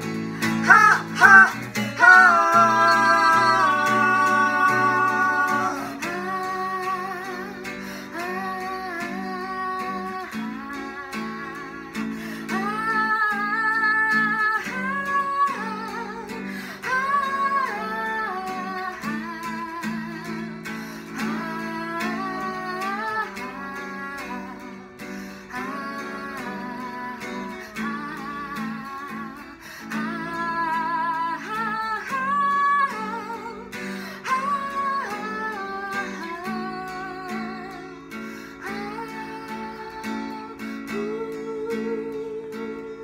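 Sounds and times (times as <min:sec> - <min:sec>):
wordless melody line: 0:00.0 - 0:07.6
acoustic guitar strumming: 0:00.0 - 0:43.0.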